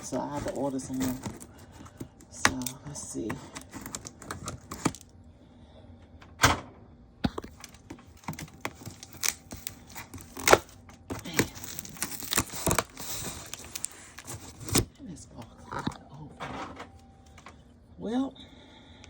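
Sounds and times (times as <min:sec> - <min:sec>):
wrapping rustling and tearing: 0:00.0 - 0:05.1, 0:07.5 - 0:14.9.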